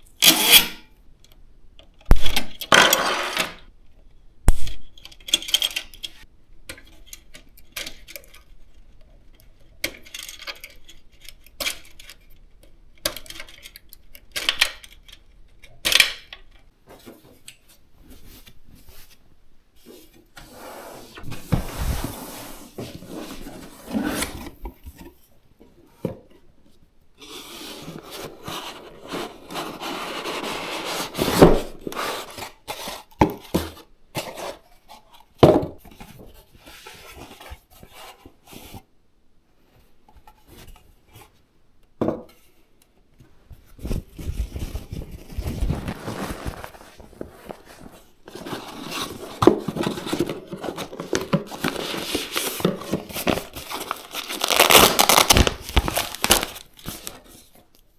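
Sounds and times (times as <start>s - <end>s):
sharp knocks of parts set down: 2.1s - 3.6s
cardboard and plastic packaging rustling: 43.2s - 57.9s
plastic crinkling: 44.4s - 57.5s.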